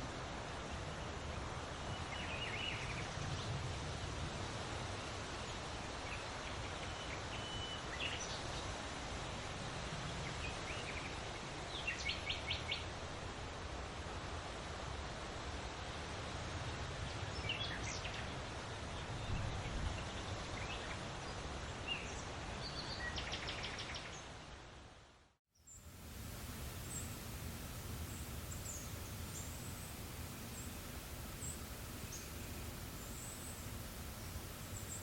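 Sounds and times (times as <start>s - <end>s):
breeze: 25.7s - 35.0s
bird calls: 26.2s - 35.0s.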